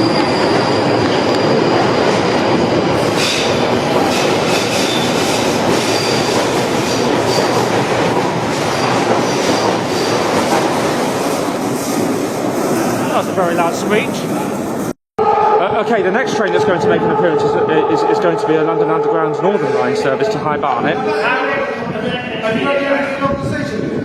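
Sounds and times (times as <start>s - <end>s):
train running and rail clatter: 0.0s - 14.9s.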